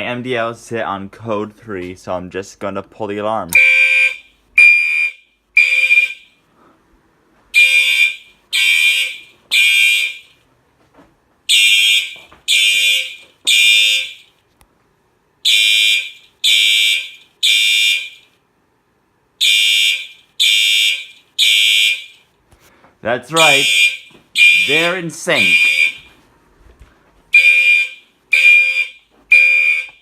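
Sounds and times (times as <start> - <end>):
fire alarm horn blasts: 3.5 - 6.5, 7.5 - 10.4, 11.5 - 14.4, 15.4 - 18.4, 19.4 - 22.2, 23.3 - 26.2, 27.3 - 30.0.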